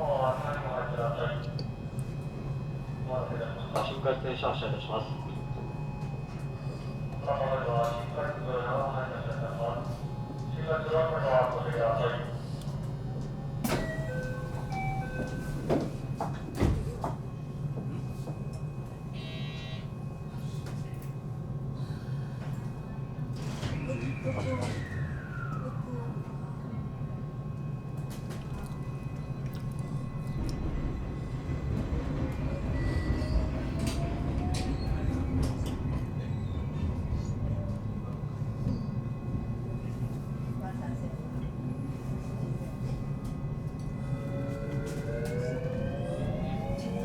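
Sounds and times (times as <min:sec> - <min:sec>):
electric train humming on rails: 0:00.0 - 0:47.0
train wheels rumbling on rail: 0:27.4 - 0:47.0.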